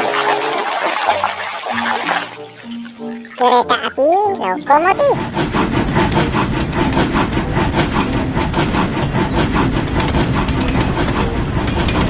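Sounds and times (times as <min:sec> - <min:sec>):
train chugging rhythmically: 0:03.8 - 0:12.0.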